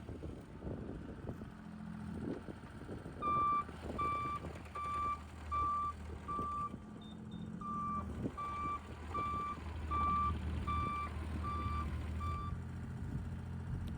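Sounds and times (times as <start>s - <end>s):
diesel engine running: 0.0s - 13.9s
excavator travel alarm beeping: 3.2s - 12.6s.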